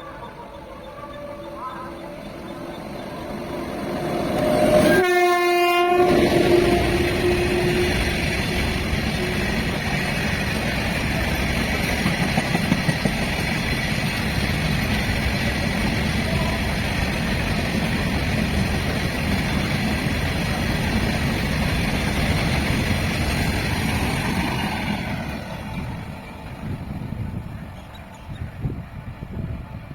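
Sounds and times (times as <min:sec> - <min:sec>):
train wheels rumbling on rail: 0:00.0 - 0:29.9
locomotive horn: 0:03.4 - 0:09.8.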